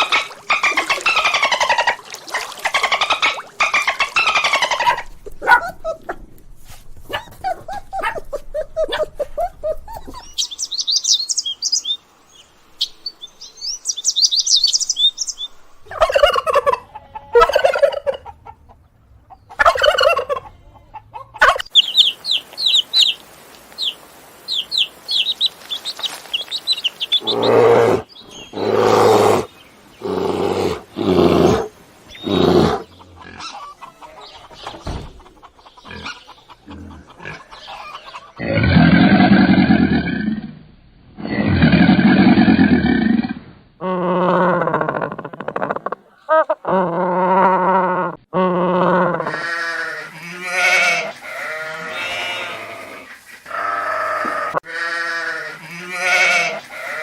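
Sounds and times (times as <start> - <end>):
farm birds chirping: 0.0 - 38.6, 49.3 - 57.0
lower bird calls: 21.6 - 35.0.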